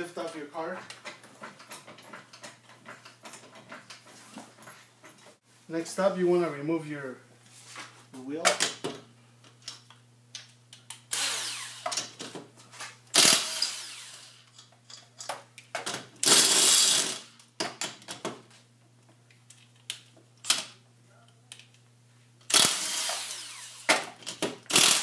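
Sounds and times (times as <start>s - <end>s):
small clicks and clanks: 0.3s - 5.3s
impact wrench bursts: 11.1s - 12.2s, 13.1s - 14.5s, 16.2s - 17.4s, 22.5s - 25.0s.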